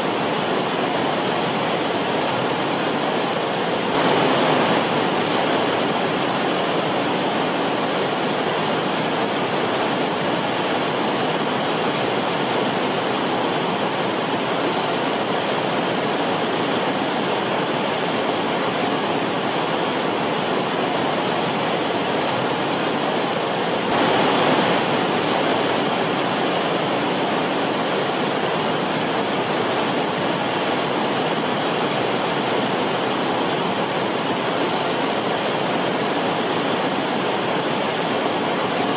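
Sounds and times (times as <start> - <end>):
forest stream water rushing: 0.0 - 38.9.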